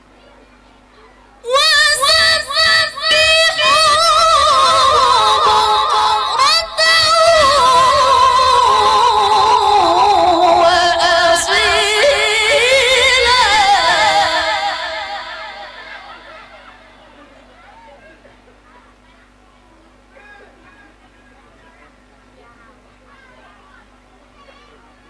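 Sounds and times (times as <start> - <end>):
woman reciting melodically: 1.4 - 17.1.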